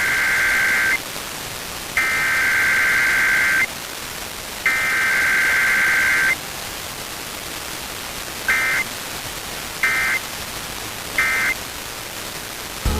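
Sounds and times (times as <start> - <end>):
radio static: 0.0 - 1.0, 2.0 - 3.8, 4.6 - 6.4, 8.4 - 9.0, 9.8 - 12.9
two-tone digital data bursts: 0.0 - 1.0, 2.0 - 3.7, 4.7 - 6.4, 8.5 - 8.9, 9.8 - 10.2, 11.2 - 11.6.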